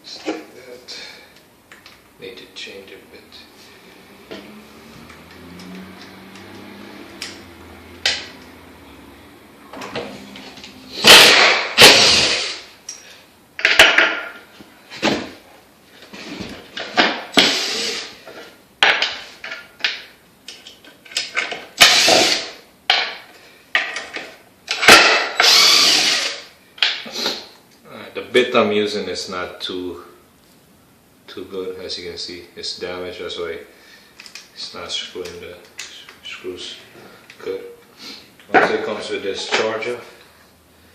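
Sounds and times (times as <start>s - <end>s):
impact driver hammering: 11.0s - 12.4s, 24.7s - 26.4s.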